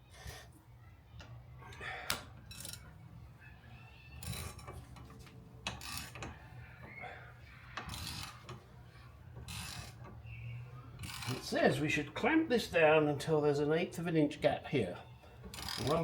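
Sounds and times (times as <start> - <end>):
metallic clicks and scrapes: 1.2 - 3.0, 4.0 - 11.6, 15.4 - 16.0.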